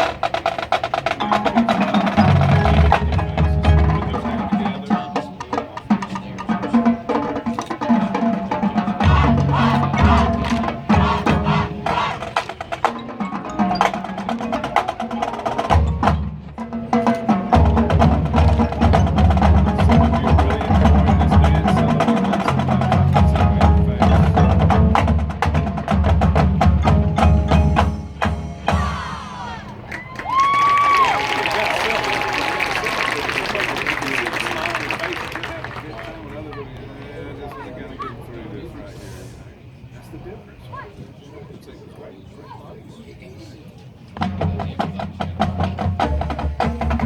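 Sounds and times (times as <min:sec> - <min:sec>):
marching band playing: 0:00.0 - 0:37.6, 0:44.2 - 0:47.0
low brass chords: 0:06.6 - 0:29.0.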